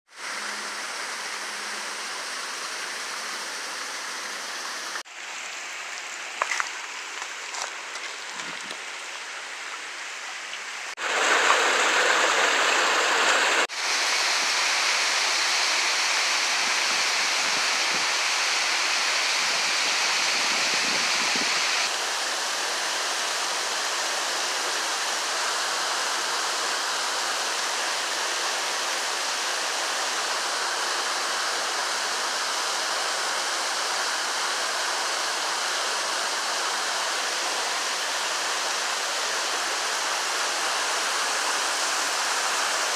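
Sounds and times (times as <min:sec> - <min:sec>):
river water rushing: 0:00.1 - 0:42.9.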